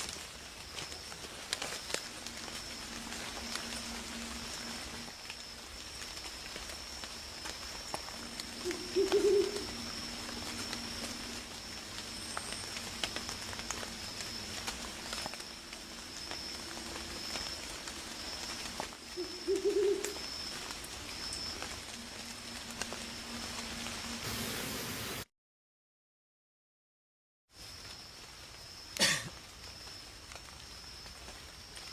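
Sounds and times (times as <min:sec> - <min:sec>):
high insect drone: 0:00.0 - 0:25.2
low owl hoot: 0:08.5 - 0:10.7, 0:19.1 - 0:20.3.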